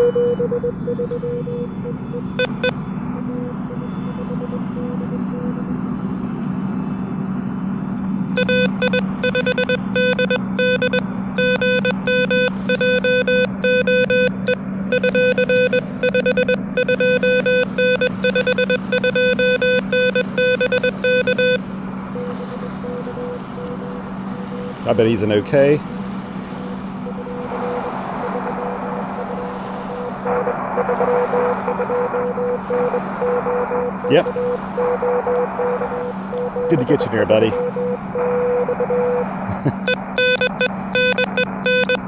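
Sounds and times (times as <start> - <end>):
morse code tones: 0.0 - 5.6, 8.4 - 29.5, 30.2 - 42.0
steady low hum: 0.0 - 42.0.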